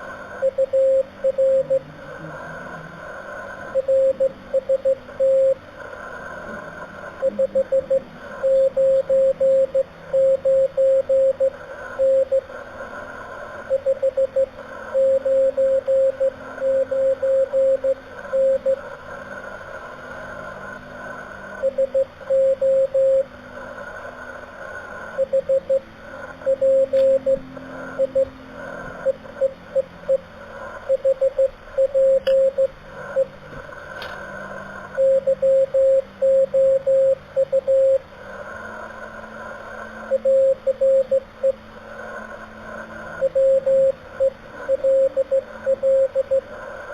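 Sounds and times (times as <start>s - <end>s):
faint lower-pitched radio signals: 0.0s - 46.9s
radio band hiss: 0.0s - 46.9s
morse code tone: 0.4s - 1.8s, 3.8s - 5.6s, 7.2s - 12.4s, 13.7s - 18.8s, 21.6s - 23.2s, 25.2s - 25.8s, 26.5s - 28.3s, 30.9s - 33.4s, 35.0s - 38.0s, 40.1s - 41.6s, 43.2s - 46.5s.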